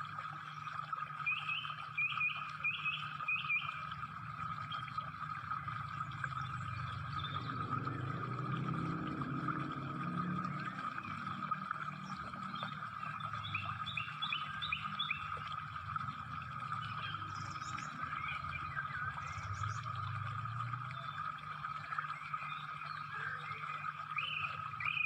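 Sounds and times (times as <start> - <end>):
birds chirping: 0.4 - 25.0
low rumble: 4.0 - 13.9.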